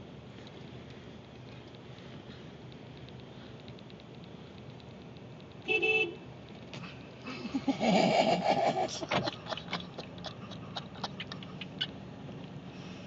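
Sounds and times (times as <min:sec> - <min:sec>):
car horn beep: 0:05.7 - 0:06.2.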